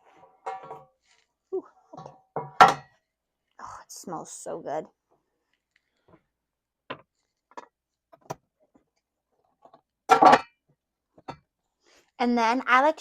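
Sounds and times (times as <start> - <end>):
loaf pans tapping and knocking: 0.1 - 1.0, 2.0 - 3.0, 10.1 - 10.6
pans clattering: 0.2 - 0.9, 2.0 - 2.9, 10.1 - 10.5.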